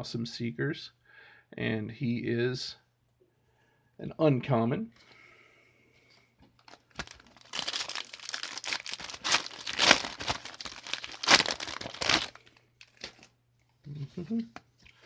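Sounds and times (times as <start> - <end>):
wrapper crinkling and tearing: 6.6 - 13.3.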